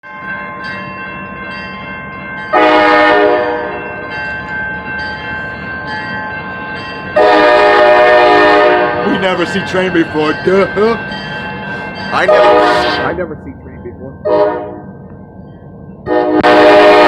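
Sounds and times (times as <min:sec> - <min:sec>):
locomotive air horn blasts: 0:02.6 - 0:03.8, 0:07.2 - 0:09.1, 0:12.2 - 0:13.2, 0:14.3 - 0:14.8, 0:16.1 - 0:17.0.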